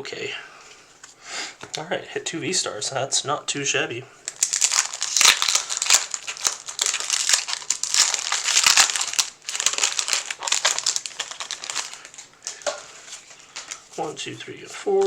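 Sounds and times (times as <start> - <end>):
foil wrapper crinkling: 4.2 - 14.1.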